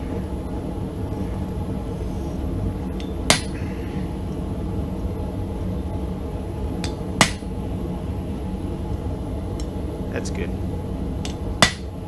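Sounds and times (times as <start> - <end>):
hammer striking metal punch: 3.3 - 3.6, 6.8 - 7.5, 11.2 - 11.9.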